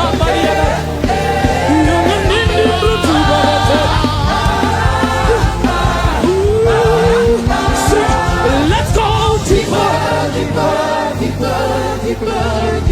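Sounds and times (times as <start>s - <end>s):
gospel band accompaniment: 0.0s - 12.9s
person singing: 0.0s - 12.9s.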